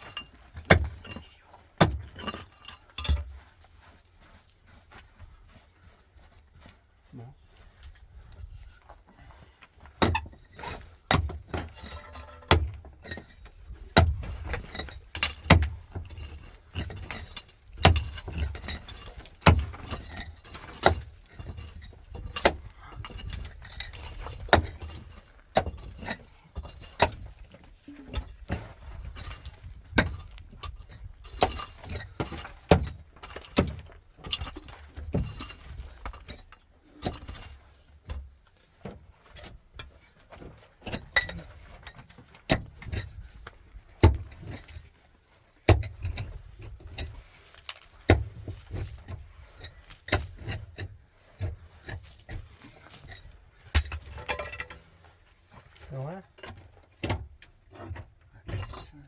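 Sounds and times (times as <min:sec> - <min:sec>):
hard objects clinking and knocking: 0:11.1 - 0:37.6, 0:47.7 - 0:54.9.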